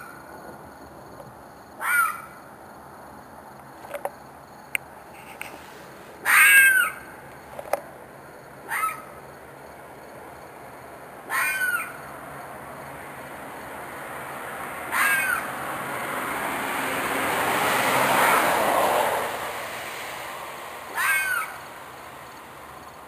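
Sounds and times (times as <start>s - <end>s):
animal screeching scream: 1.8s - 2.3s, 6.2s - 7.1s, 8.7s - 9.1s, 11.3s - 12.0s, 14.9s - 15.5s, 20.9s - 21.6s.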